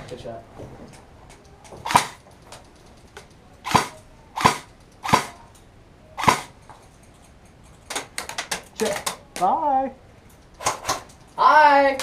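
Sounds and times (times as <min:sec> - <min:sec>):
airsoft gun shots: 0:01.8 - 0:02.2, 0:03.6 - 0:05.5, 0:06.2 - 0:06.6.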